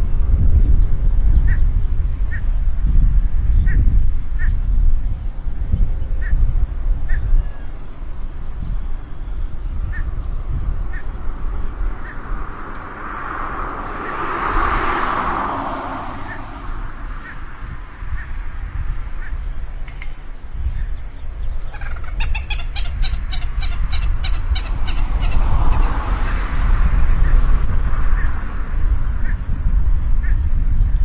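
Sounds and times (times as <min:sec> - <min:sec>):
steady low rumble: 0:00.0 - 0:31.0
birds calling: 0:06.0 - 0:26.0
sharp clicking bird calls: 0:12.0 - 0:13.0, 0:13.8 - 0:14.3, 0:18.1 - 0:25.4.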